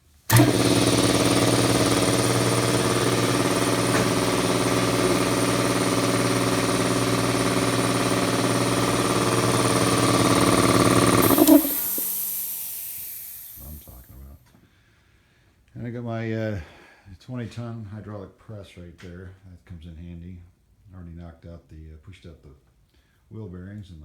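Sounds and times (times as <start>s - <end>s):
air compressor running: 0.3s - 14.0s.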